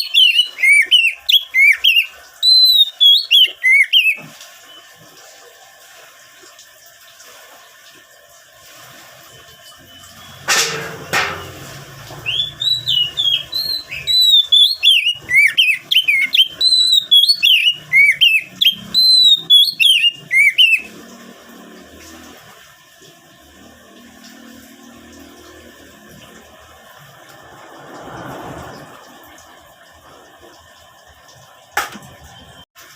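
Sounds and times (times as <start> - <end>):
bird singing whistled notes: 0.0 - 4.9, 12.2 - 20.9.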